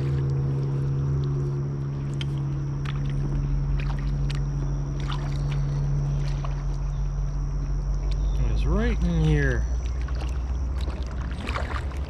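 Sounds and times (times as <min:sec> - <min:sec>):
paddle drips and splashes: 0:00.0 - 0:12.0
steady low hum: 0:00.0 - 0:12.0.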